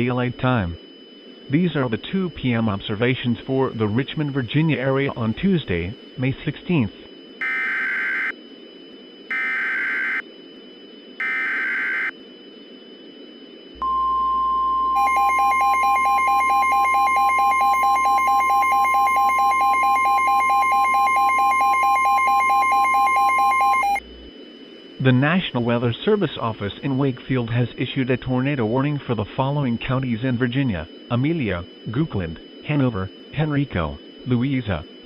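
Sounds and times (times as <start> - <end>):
steady alarm tone: 0.0 - 35.0
screeching digital data bursts: 7.4 - 8.4, 9.3 - 10.2, 11.2 - 12.2, 15.0 - 24.0
rapid pulsing buzz: 22.2 - 35.0.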